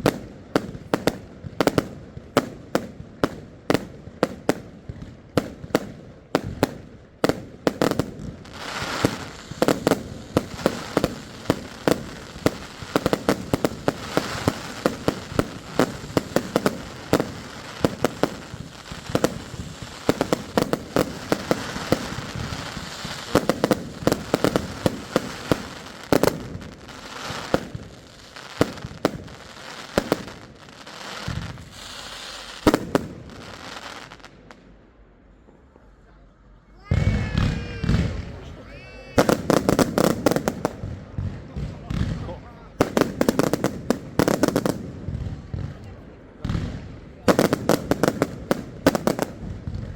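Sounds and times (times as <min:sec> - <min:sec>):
fireworks bangs: 0:00.0 - 0:34.8, 0:36.8 - 0:49.9
fireworks crackling: 0:00.0 - 0:34.9, 0:36.8 - 0:49.9.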